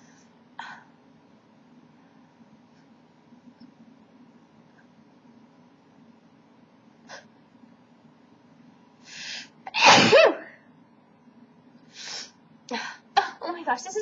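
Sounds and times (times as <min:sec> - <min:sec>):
woman sneezing: 0:09.7 - 0:10.5.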